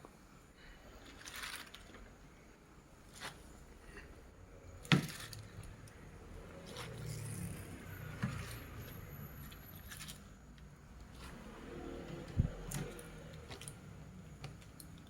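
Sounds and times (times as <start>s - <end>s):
rustling: 1.0s - 2.1s.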